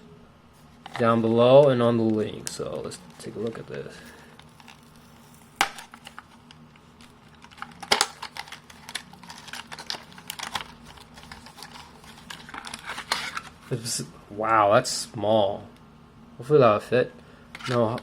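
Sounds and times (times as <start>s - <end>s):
package being opened: 2.1s - 13.6s.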